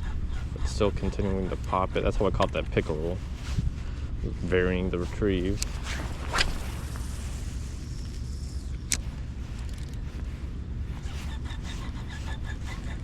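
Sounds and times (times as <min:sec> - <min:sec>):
wind rumble on microphone: 0:00.0 - 0:13.0.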